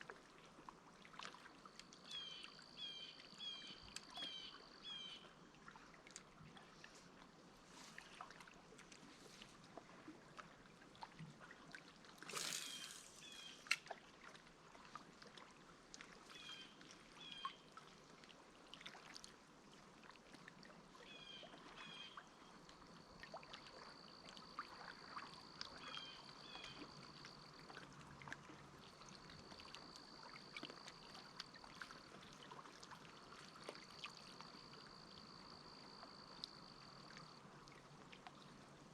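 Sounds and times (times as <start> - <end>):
water splash: 12.2 - 14.0.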